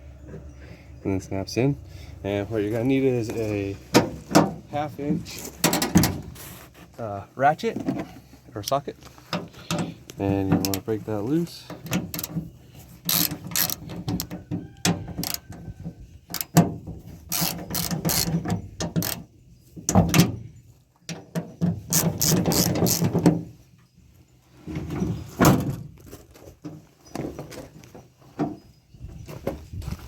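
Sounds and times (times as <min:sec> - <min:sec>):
hand ratchet clicking: 0:12.1 - 0:12.3, 0:13.1 - 0:14.3, 0:15.2 - 0:15.4, 0:16.3 - 0:16.6, 0:17.3 - 0:19.2, 0:21.9 - 0:23.1.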